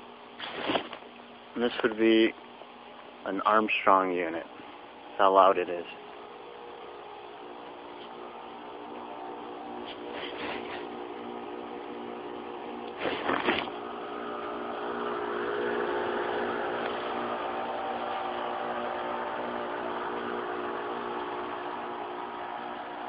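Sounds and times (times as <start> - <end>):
air conditioner unit humming: 0.0 - 23.0
loud rustle: 0.4 - 1.1, 9.8 - 11.0, 13.0 - 13.9.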